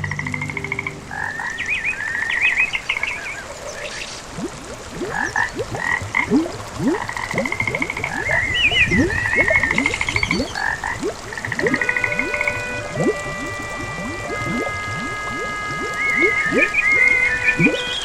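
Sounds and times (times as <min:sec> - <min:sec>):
frogs trilling and chirping: 0:00.0 - 0:18.0
deeper rising frog notes: 0:04.4 - 0:18.0.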